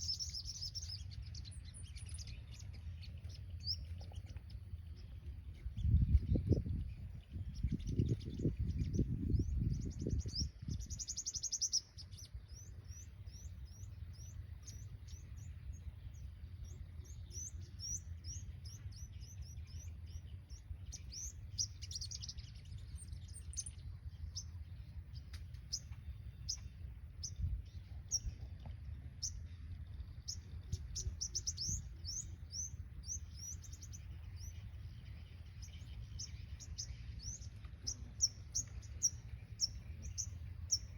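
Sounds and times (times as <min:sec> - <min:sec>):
birds chirping and trilling: 0:00.0 - 0:40.9.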